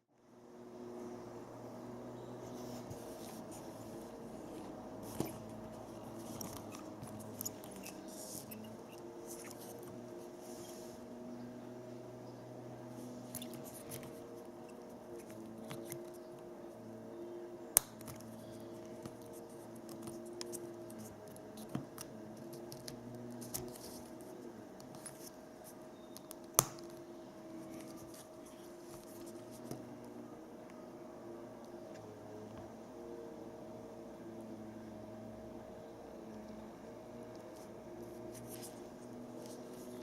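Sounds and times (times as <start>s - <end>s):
faint steady hum: 0.0s - 40.0s
wristwatch and strap being handled: 2.5s - 10.9s, 12.9s - 16.3s, 27.5s - 29.9s.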